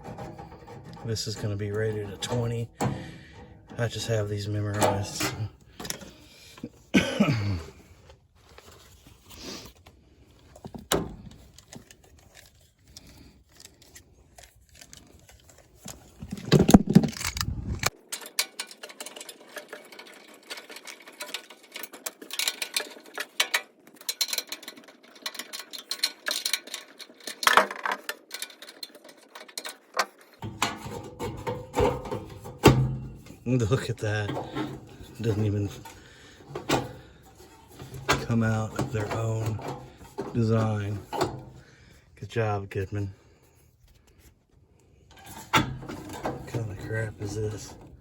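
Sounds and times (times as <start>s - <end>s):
metal parts clicking and rattling: 0.0s - 6.8s, 8.5s - 41.6s, 45.0s - 48.0s
rustling: 7.7s - 18.1s.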